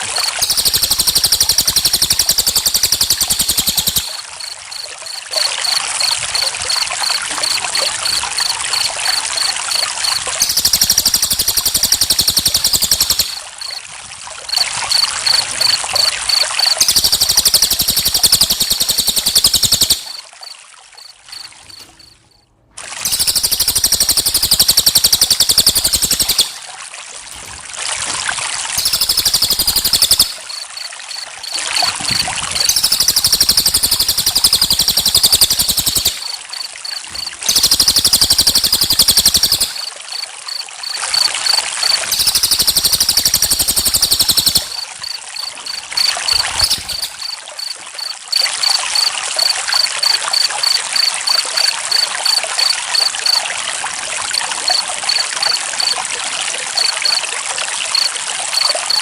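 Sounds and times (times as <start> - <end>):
crickets chirping: 0.0 - 22.4, 23.0 - 26.6, 28.8 - 53.5, 54.3 - 56.0, 56.8 - 59.0
water trickling: 0.0 - 59.0.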